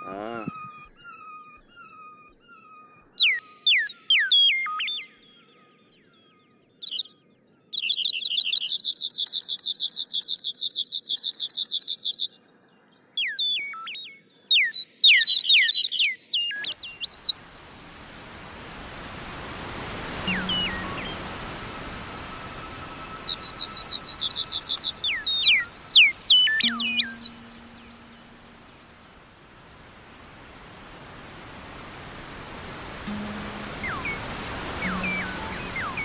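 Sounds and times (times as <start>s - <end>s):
birds calling: 0.0s - 5.2s, 14.5s - 17.8s, 19.6s - 21.6s, 22.8s - 30.2s, 33.1s - 36.0s
outdoor hiss: 15.4s - 36.0s.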